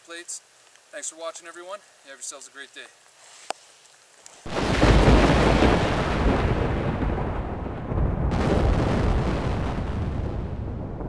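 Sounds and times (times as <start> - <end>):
deep rumbling explosion: 4.5 - 11.0.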